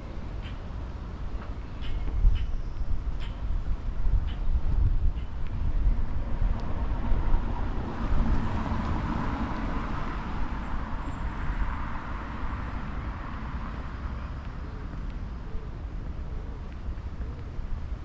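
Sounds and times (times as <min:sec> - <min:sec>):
wind rumble on microphone: 0:00.0 - 0:18.0
car passing: 0:06.3 - 0:14.4.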